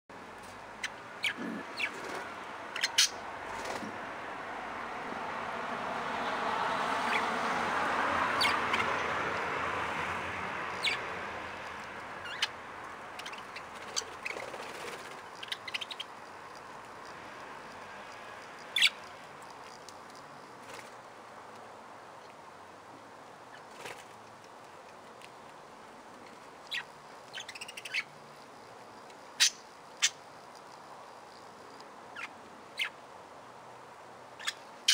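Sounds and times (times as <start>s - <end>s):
budgerigars chirping: 0.8s - 3.2s, 8.4s - 9.0s, 10.7s - 17.1s, 18.1s - 19.1s, 26.7s - 28.1s, 29.4s - 30.2s.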